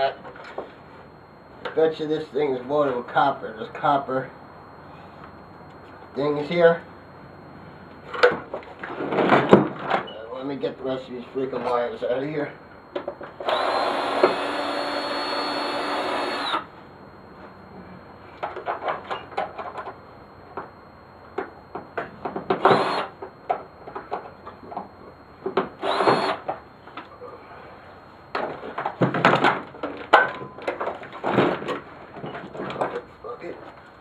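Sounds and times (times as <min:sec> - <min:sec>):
power drill spinning: 0:13.4 - 0:16.7, 0:22.6 - 0:23.1, 0:25.8 - 0:26.5.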